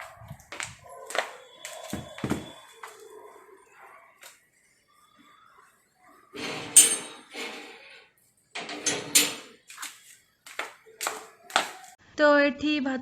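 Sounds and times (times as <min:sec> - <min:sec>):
metal cookware clattering: 0:06.3 - 0:09.7.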